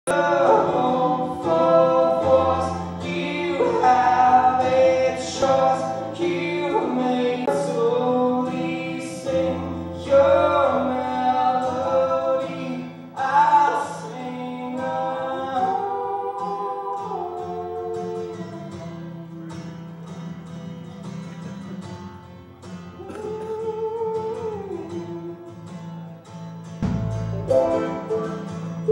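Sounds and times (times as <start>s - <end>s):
voices singing in harmony: 0.1s - 20.2s, 23.0s - 25.9s, 27.4s - 28.9s
sustained low accompanying notes: 26.8s - 28.9s.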